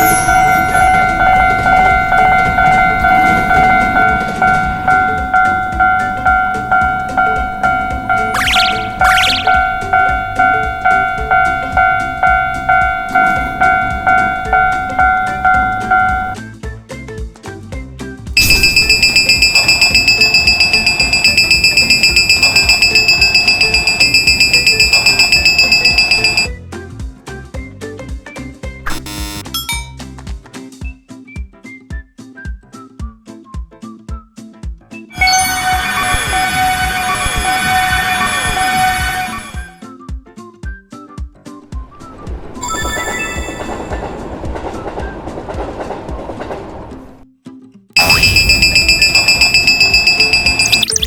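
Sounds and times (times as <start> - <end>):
railroad crossing bell ringing: 0.0 - 16.4, 18.4 - 26.5, 42.6 - 44.3, 48.0 - 50.8.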